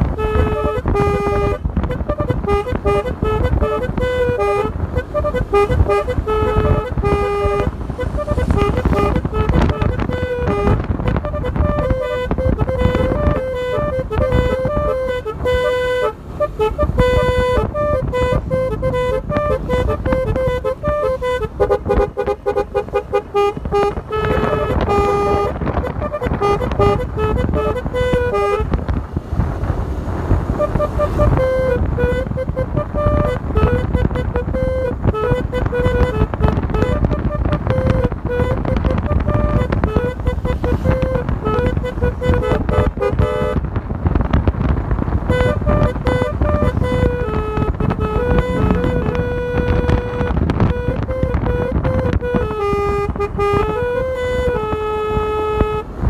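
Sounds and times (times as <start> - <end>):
low rumble of motorcycle: 0.0 - 56.0
multi-tone horn melody: 0.0 - 56.0
low rumble: 1.5 - 15.4, 43.6 - 52.4.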